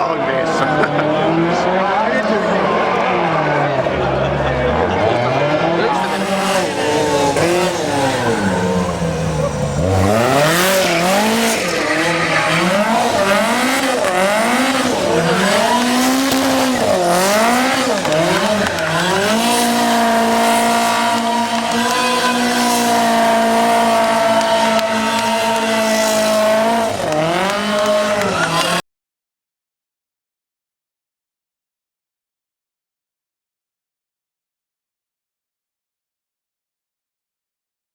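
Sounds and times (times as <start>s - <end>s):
rally car engine revving: 0.0s - 28.8s.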